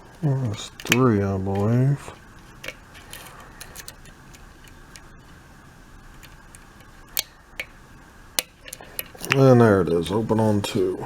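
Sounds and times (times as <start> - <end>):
lock pick clicks: 0.4 - 1.8, 2.6 - 5.4, 6.0 - 7.8, 8.4 - 9.5.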